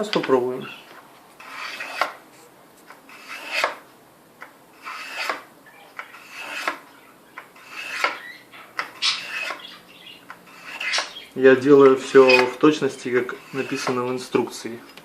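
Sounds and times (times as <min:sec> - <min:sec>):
knife rasping through sharpener: 0:01.4 - 0:02.2, 0:03.1 - 0:03.8, 0:04.8 - 0:05.4, 0:06.0 - 0:06.8, 0:07.6 - 0:09.8, 0:10.5 - 0:11.3, 0:12.0 - 0:12.6, 0:13.2 - 0:14.1.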